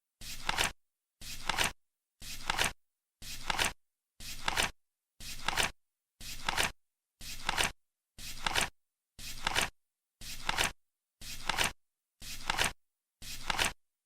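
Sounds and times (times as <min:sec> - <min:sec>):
flip clock cards flipping: 0:00.3 - 0:00.8, 0:01.4 - 0:01.8, 0:02.4 - 0:02.7, 0:05.3 - 0:05.7, 0:06.3 - 0:08.7, 0:09.3 - 0:09.7, 0:10.3 - 0:12.8, 0:13.4 - 0:13.8.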